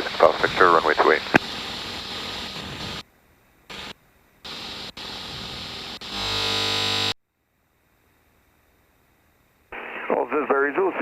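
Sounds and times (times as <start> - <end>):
radio static hiss bursts: 0.0 - 3.0, 3.7 - 7.2, 9.7 - 11.0
buzzing carrier tone: 3.7 - 7.2.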